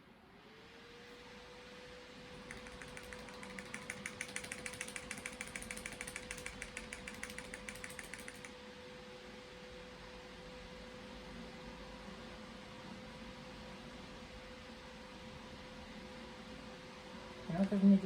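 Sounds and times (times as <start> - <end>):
computer fans humming: 2.3 - 8.5
keyboard key tapping: 2.4 - 8.5.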